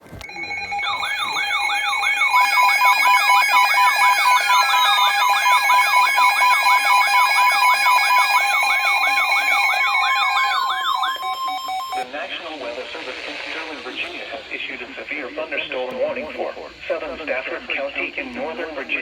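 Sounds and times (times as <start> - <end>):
two-tone alert signal with yelp: 0.2 - 12.0.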